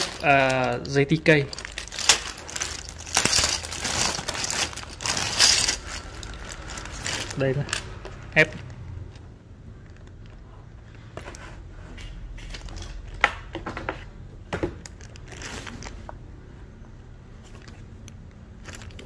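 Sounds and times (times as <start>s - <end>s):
plastic keycaps rustling: 0.0s - 8.4s, 12.4s - 13.2s, 17.4s - 19.0s.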